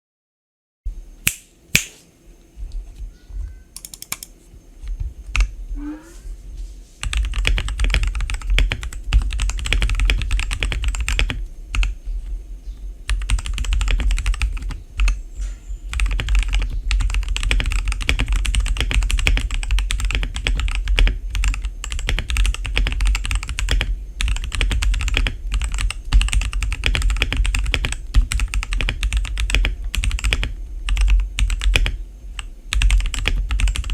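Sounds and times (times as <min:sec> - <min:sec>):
mechanical keyboard typing: 0:03.8 - 0:04.3, 0:07.0 - 0:12.0, 0:13.1 - 0:15.2, 0:15.9 - 0:33.9.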